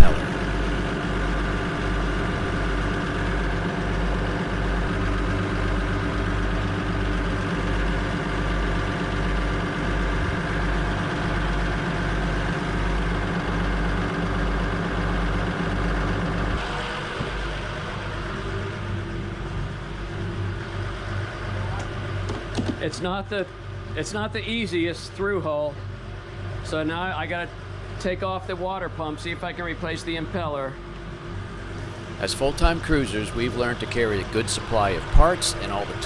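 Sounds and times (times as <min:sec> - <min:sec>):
boat engine droning: 0:31.8 - 0:36.0.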